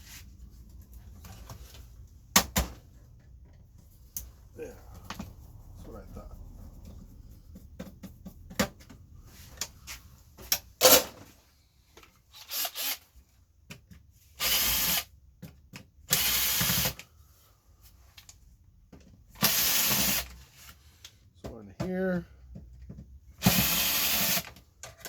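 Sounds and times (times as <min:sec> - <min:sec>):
cordless drill spinning screws: 0:12.3 - 0:13.0, 0:14.4 - 0:15.1, 0:16.1 - 0:17.0, 0:19.4 - 0:20.4, 0:23.4 - 0:24.6.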